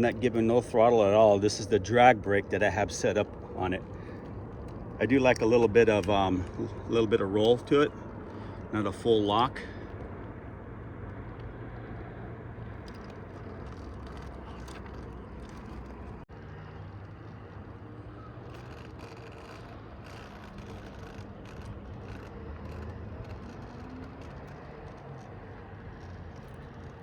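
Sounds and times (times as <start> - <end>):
tyres crunching over rock: 12.7 - 27.0
rc car motor whirring: 12.8 - 27.0.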